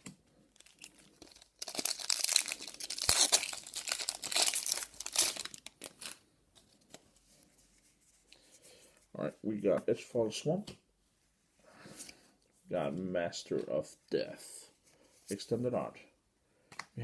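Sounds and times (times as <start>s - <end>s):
foil wrapper tearing and crinkling: 0.5s - 6.2s.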